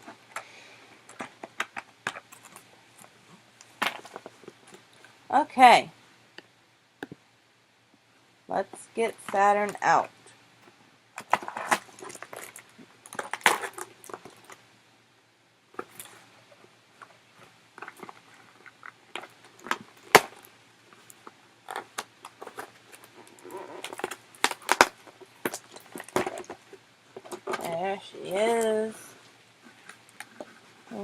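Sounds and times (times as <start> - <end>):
packaging rustling: 11.2 - 14.6, 15.8 - 28.9
packaging clicks: 17.8 - 26.6.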